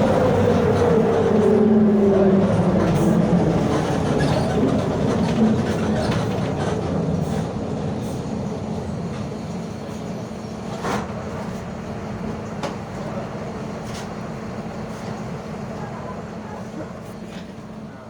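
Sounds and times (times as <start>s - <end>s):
growling rear differential: 0.0s - 7.5s
diesel bus engine rumble: 0.0s - 18.0s.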